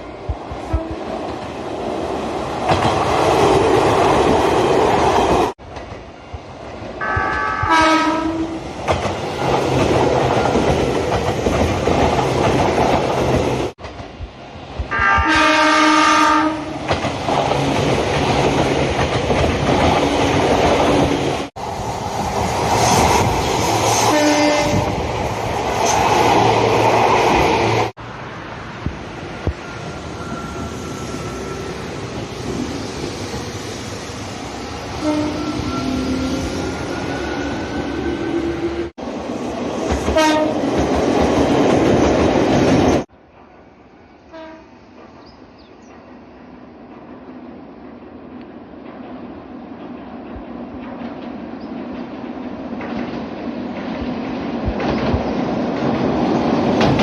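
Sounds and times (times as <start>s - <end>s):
electric train rumble: 0.0s - 57.0s
train horn: 0.7s - 1.0s, 7.0s - 8.6s, 14.9s - 16.8s, 24.1s - 24.9s, 35.0s - 36.4s, 40.2s - 40.6s, 44.2s - 44.8s.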